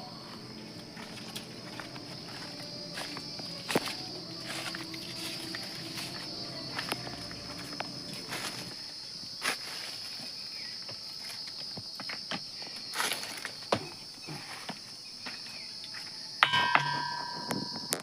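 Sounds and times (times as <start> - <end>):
footsteps on dry leaves and stones: 0.0 - 13.8
insects buzzing: 0.0 - 18.0.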